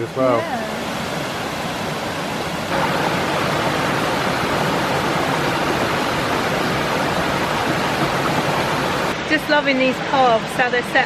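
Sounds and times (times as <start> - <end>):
waterfall gushing: 0.0 - 11.0.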